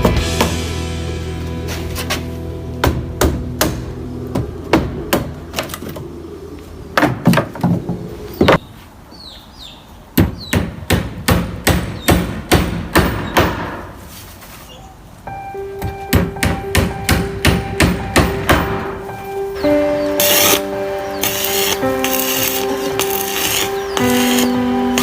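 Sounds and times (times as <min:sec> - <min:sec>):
hand tool blows: 0:20.2 - 0:25.0.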